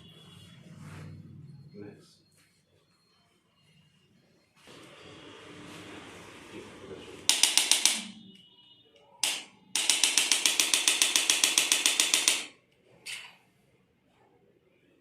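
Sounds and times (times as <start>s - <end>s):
rapid percussion massage strikes: 7.3s - 8.2s, 9.2s - 12.5s.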